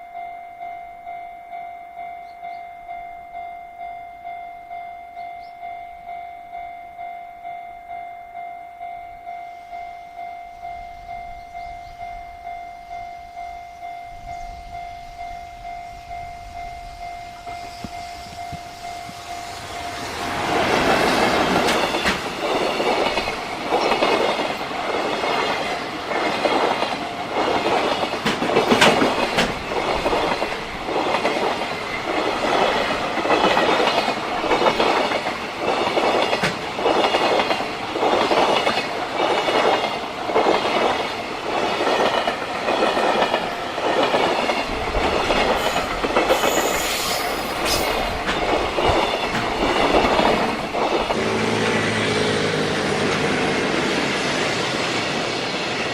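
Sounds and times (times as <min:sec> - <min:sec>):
ringing tones from wheels and rails: 0:00.0 - 0:52.4
train wheels clattering over rail joints: 0:20.1 - 0:51.8.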